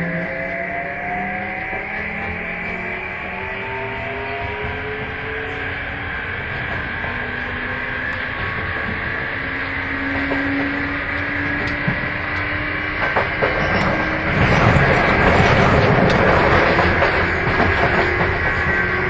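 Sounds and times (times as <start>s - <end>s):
wheel and rail rumble: 0.0s - 19.0s
rail joint clicks: 4.6s - 19.0s.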